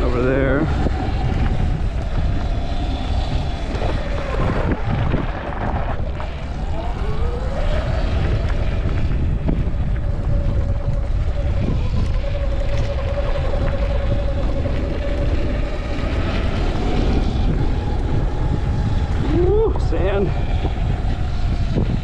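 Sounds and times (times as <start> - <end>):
electric dirt bike motor whining: 0.0 - 22.0
low rumble: 0.0 - 22.0
wind noise: 0.0 - 22.0.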